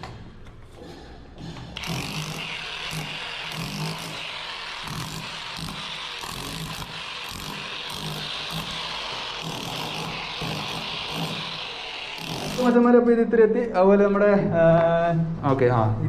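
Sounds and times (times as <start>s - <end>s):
power tool grinding masonry: 1.8s - 12.9s.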